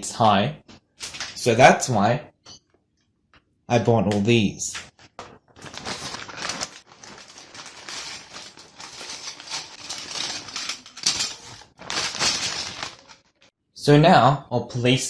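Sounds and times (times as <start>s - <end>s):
plastic toy bricks rattling: 7.6s - 13.2s.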